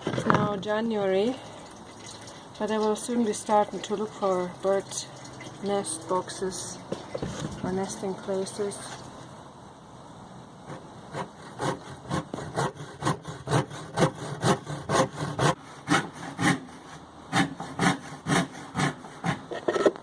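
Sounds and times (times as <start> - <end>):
hand saw cutting wood: 10.7 - 20.0.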